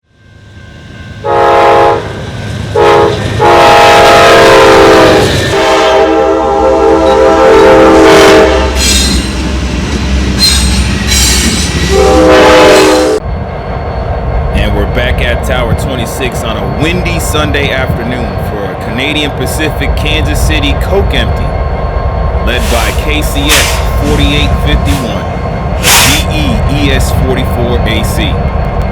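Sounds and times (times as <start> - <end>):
locomotive air horn blasts: 1.2 - 2.1, 2.8 - 8.9, 11.9 - 13.2
high-pitched squeals: 6.8 - 27.0
low rumble: 13.1 - 28.9.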